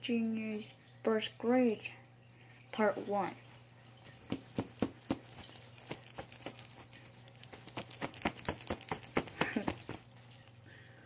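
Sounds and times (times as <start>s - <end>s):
handling clicks and crinkles: 3.9s - 10.6s.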